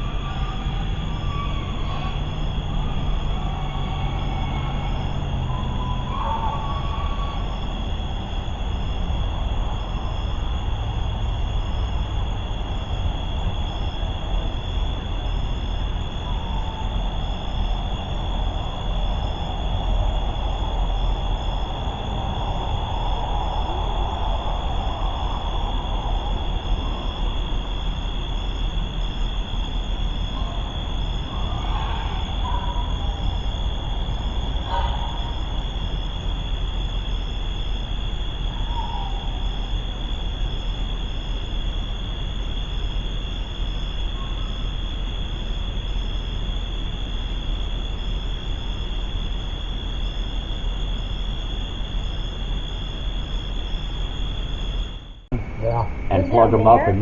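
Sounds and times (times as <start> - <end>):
insects trilling: 0.0 - 57.0
low rumble and hiss: 0.0 - 57.0
faint muffled sounds: 55.4 - 57.0
faint pulsing chirp: 55.4 - 57.0.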